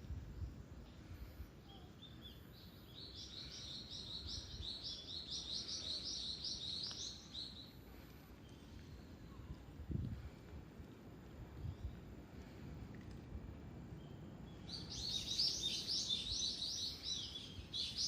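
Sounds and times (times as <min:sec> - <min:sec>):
songbird chirping: 0:00.4 - 0:09.7, 0:13.9 - 0:18.0.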